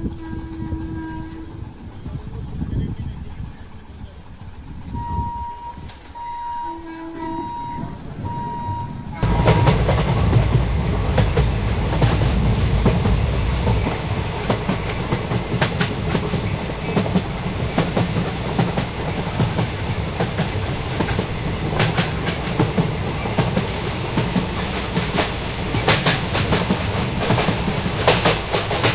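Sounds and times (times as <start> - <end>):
train horn: 0.0 - 1.8, 5.0 - 10.2
train rushing past: 0.0 - 28.9
wheels clicking over rail joints: 9.2 - 28.9.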